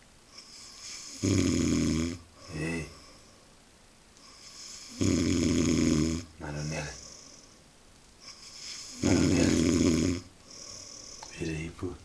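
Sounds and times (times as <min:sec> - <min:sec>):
quiet breath: 0:00.2 - 0:01.3, 0:02.3 - 0:03.6, 0:04.2 - 0:05.1, 0:06.0 - 0:09.6, 0:10.2 - 0:11.7
man snoring: 0:00.7 - 0:03.0, 0:04.4 - 0:07.2, 0:08.5 - 0:11.3.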